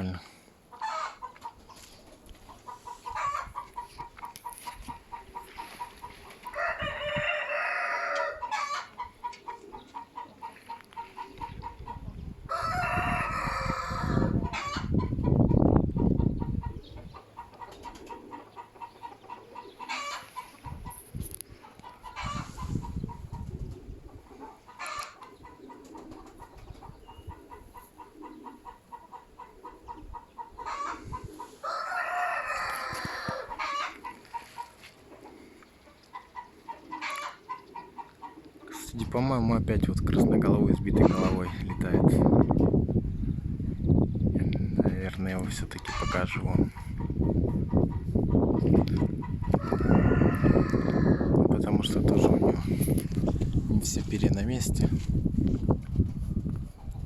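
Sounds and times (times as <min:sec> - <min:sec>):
wind buffeting microphone: 0:02.5 - 0:07.4, 0:11.0 - 0:19.8, 0:20.5 - 0:28.8, 0:29.4 - 0:31.5, 0:38.8 - 0:57.0
rooster crowing: 0:06.5 - 0:08.9, 0:12.5 - 0:14.9, 0:31.6 - 0:34.0, 0:49.5 - 0:51.3.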